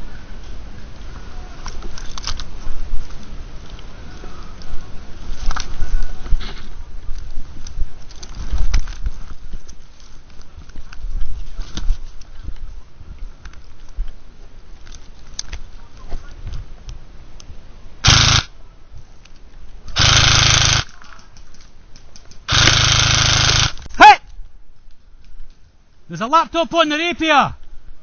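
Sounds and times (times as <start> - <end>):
airsoft rifle full-auto bursts: 18.0 - 18.5, 20.0 - 20.9, 22.5 - 23.9.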